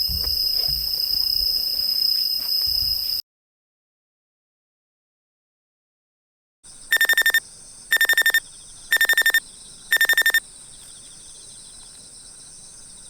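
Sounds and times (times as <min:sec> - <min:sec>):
crickets chirping: 0:00.0 - 0:03.2, 0:06.7 - 0:13.0
rapid high-pitched beeping: 0:06.9 - 0:10.4.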